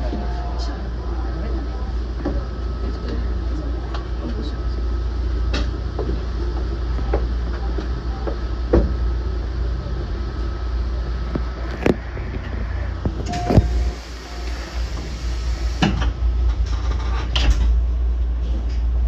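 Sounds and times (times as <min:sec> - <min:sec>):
faint steady whine: 0:00.0 - 0:16.1
train running rumble: 0:00.0 - 0:19.0.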